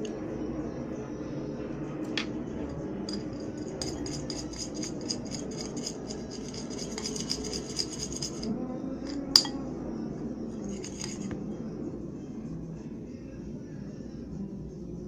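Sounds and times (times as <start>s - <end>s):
utensil clinking against bowl: 2.7s - 9.6s, 10.6s - 11.4s.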